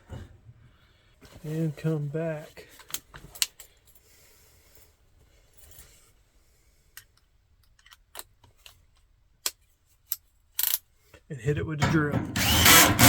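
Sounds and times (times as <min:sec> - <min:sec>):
faint scraping and handling: 0:00.1 - 0:06.8
sharp metallic clicks: 0:11.8 - 0:13.0.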